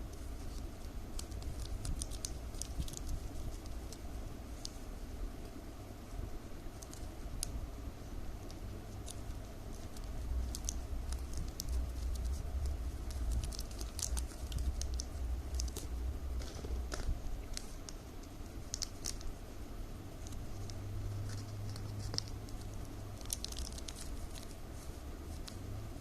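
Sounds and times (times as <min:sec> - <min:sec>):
plastic strips crinkling: 0:00.1 - 0:04.0, 0:08.4 - 0:19.4, 0:20.2 - 0:25.6.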